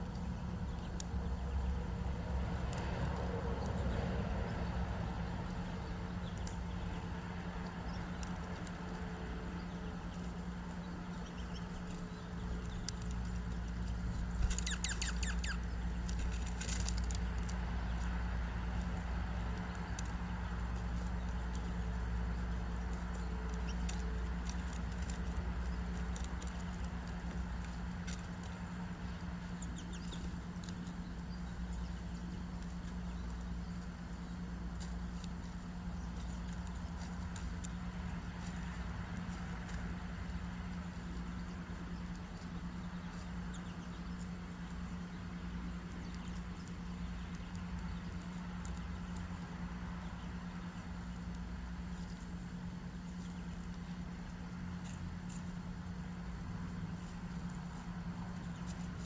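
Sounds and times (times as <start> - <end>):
low rumble and hum: 0.0 - 59.0
small birds chirping: 0.0 - 59.0.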